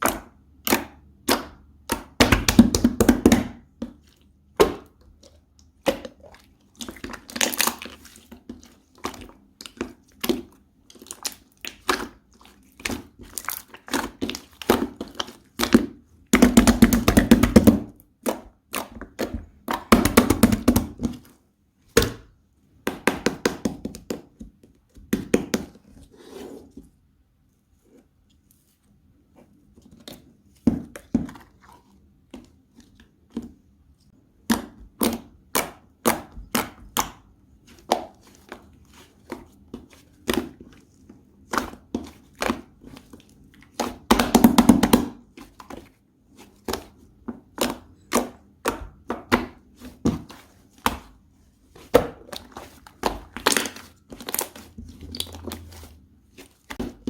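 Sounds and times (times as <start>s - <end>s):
slime squishing and popping: 51.9s - 57.0s.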